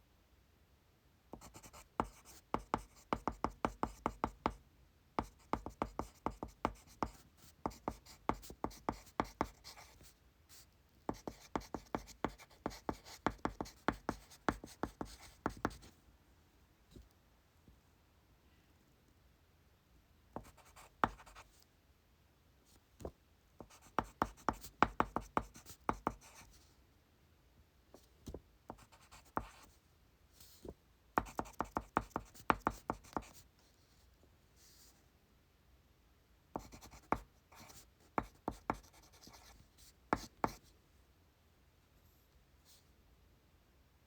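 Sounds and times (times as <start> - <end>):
pencil writing on paper: 1.4 - 4.6, 5.2 - 10.0, 11.1 - 15.8, 20.4 - 21.4, 23.6 - 26.5, 28.7 - 29.6, 31.2 - 33.4, 36.6 - 40.6.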